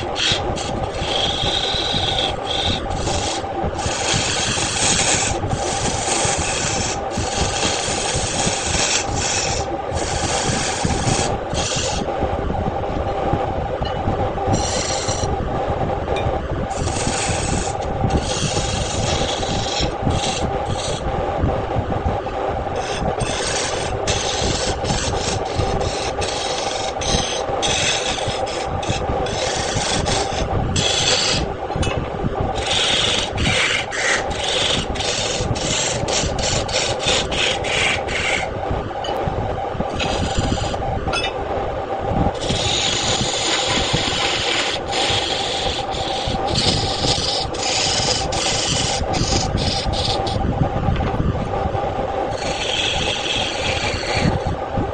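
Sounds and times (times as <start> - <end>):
wood lathe humming: 0.0 - 12.2, 13.8 - 54.9
tool scraping spinning wood: 0.0 - 54.9.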